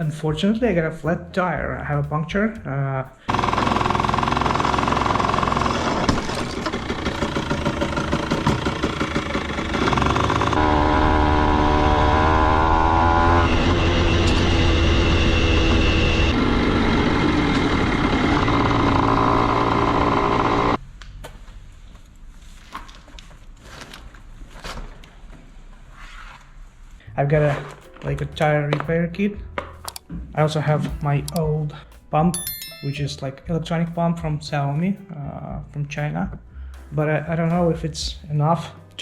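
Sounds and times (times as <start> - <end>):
two-stroke motorcycle engine: 3.3 - 20.8.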